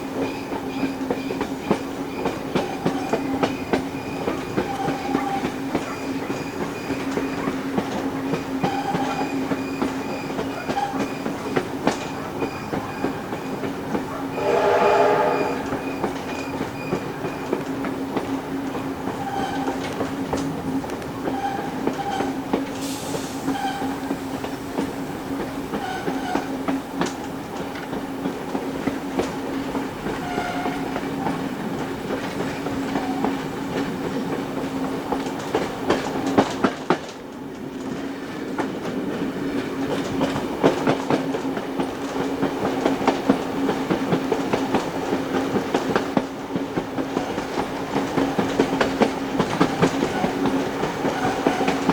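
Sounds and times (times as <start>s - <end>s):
steam train running hum: 0.0s - 51.9s
wheels clicking over rail joints: 16.1s - 51.9s.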